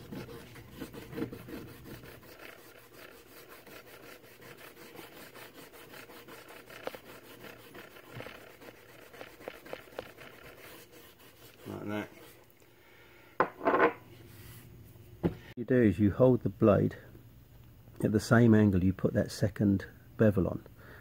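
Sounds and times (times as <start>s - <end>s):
compound rubbing on leather strop: 0.0s - 11.9s.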